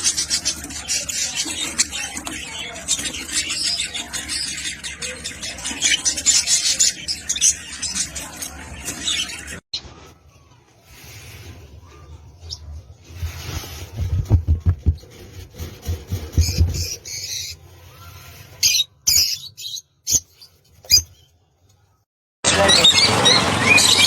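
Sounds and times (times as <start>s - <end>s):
rustling: 10.5s - 18.7s.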